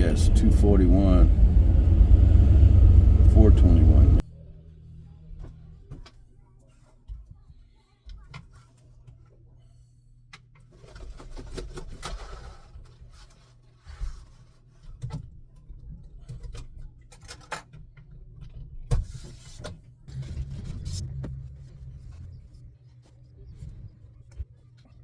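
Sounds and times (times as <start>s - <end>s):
engine and road hum: 0.0s - 6.1s, 20.1s - 24.0s.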